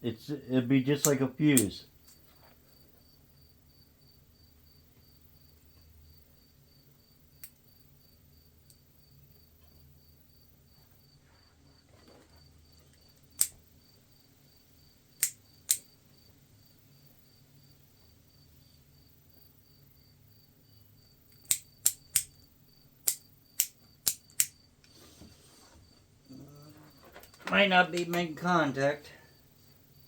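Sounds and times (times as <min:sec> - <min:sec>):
sharp metallic clicks of wire: 0:07.4 - 0:07.6, 0:13.3 - 0:13.6, 0:15.2 - 0:15.9, 0:21.3 - 0:22.4, 0:23.0 - 0:25.0.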